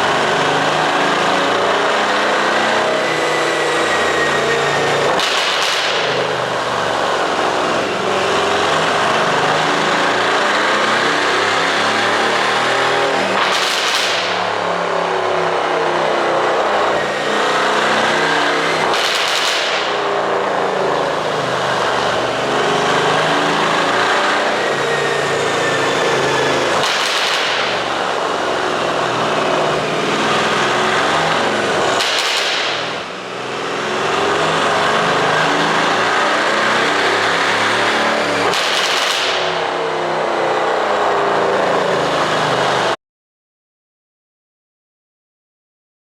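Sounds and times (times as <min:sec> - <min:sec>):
car exhaust running and revving: 0:00.0 - 0:43.0
exhaust pops and crackles: 0:05.1 - 0:06.1, 0:18.8 - 0:20.0, 0:26.8 - 0:27.8, 0:32.0 - 0:32.9.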